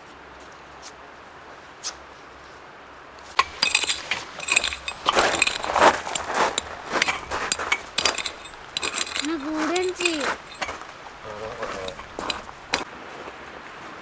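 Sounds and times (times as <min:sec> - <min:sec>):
hard objects clinking: 0:03.3 - 0:12.9.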